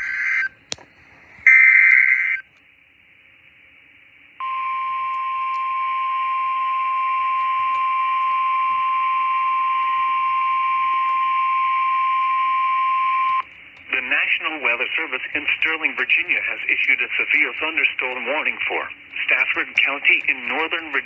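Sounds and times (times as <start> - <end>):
radio hiss: 0.0 - 2.5, 10.3 - 21.0.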